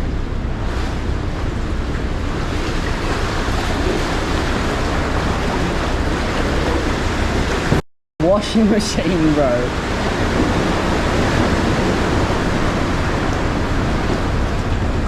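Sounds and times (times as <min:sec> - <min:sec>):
waves splashing against a hull: 0:00.0 - 0:15.0
wind noise on microphone: 0:09.6 - 0:15.0.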